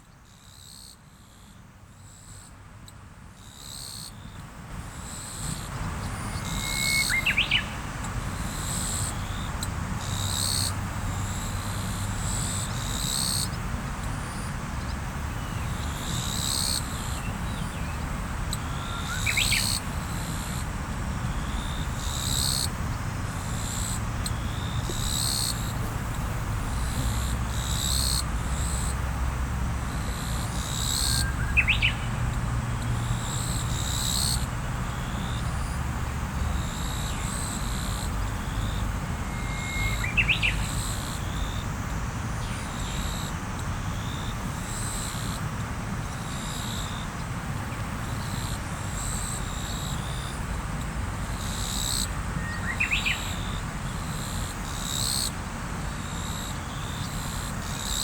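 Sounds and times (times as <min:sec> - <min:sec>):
river water flowing: 0:22.7 - 0:33.1.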